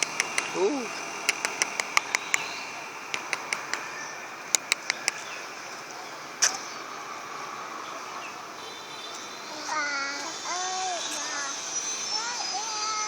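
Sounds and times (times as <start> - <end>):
short sharp clicks: 0.0 - 0.6, 1.2 - 3.9, 4.5 - 5.2, 6.4 - 6.6
steady background hiss: 0.0 - 13.0.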